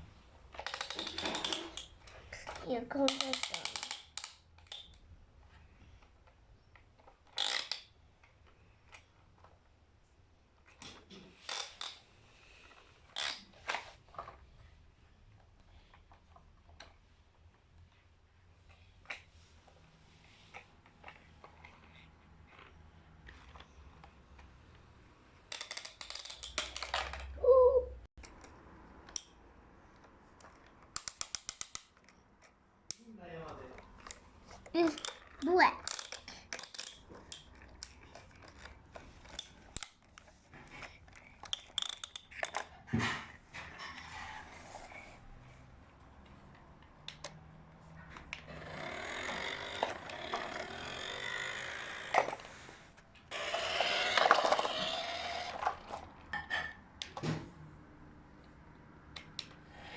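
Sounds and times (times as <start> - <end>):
plastic toy parts clicking: 0.5 - 5.0, 6.7 - 9.5, 25.5 - 27.4, 30.0 - 42.8, 53.3 - 56.1.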